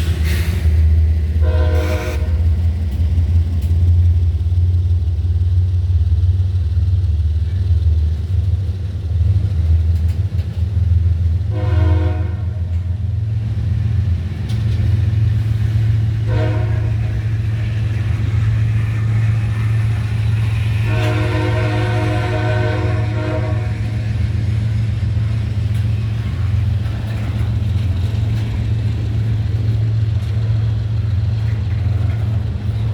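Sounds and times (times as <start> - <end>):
low rumble of passing train: 0.0 - 32.9
locomotive air horn blasts: 1.4 - 2.6, 11.5 - 12.9, 16.2 - 17.2, 20.8 - 24.1.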